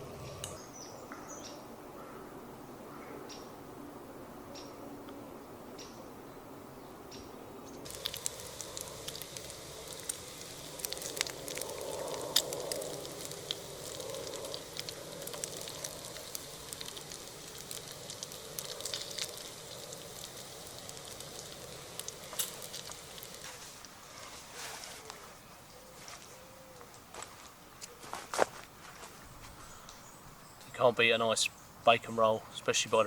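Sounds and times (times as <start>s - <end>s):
bacon sizzling and popping: 7.8s - 24.0s.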